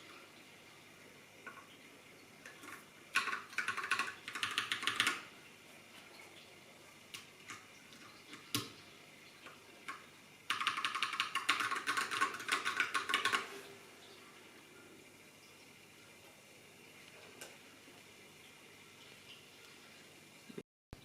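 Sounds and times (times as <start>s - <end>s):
mechanical keyboard typing: 3.2s - 5.2s, 10.5s - 13.5s.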